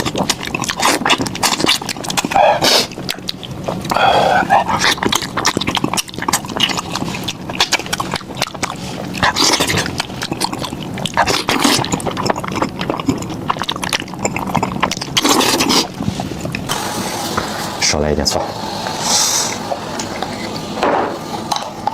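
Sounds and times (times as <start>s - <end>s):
wet chewing and lip-smacking: 0.0s - 16.8s.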